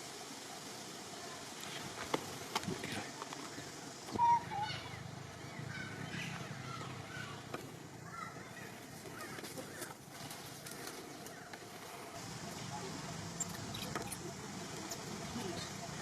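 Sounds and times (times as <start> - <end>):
steady background hiss: 0.0 - 16.0.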